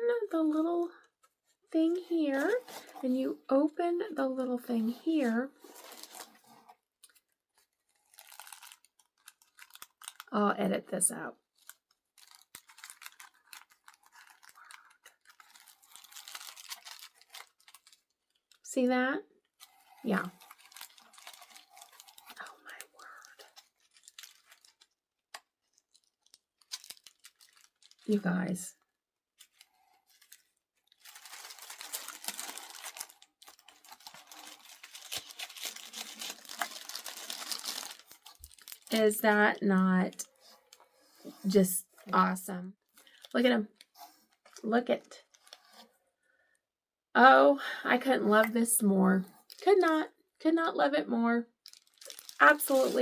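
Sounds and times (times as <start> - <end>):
packaging rustling and crinkling: 0.4 - 3.6, 4.7 - 10.3, 11.4 - 18.6, 19.4 - 28.5, 29.3 - 42.1, 42.9 - 44.6, 45.2 - 45.9, 49.3 - 49.9, 51.6 - 53.0.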